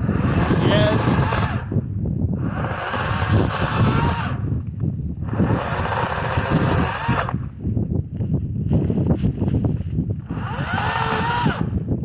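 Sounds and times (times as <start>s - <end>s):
electric chainsaw running: 0.0s - 1.8s, 2.4s - 4.6s, 5.2s - 7.6s, 10.2s - 11.9s.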